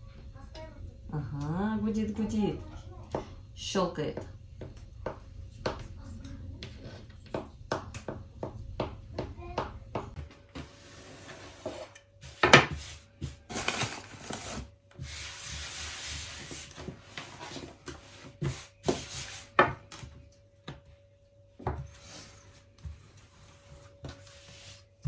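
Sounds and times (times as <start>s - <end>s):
dough rolled on wooden board: 0.2s - 13.5s, 14.9s - 20.9s.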